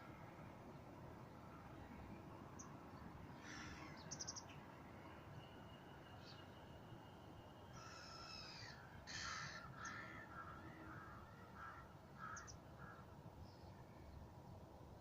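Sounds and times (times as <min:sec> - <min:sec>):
faint bird calls: 0:03.4 - 0:04.5, 0:07.7 - 0:14.0.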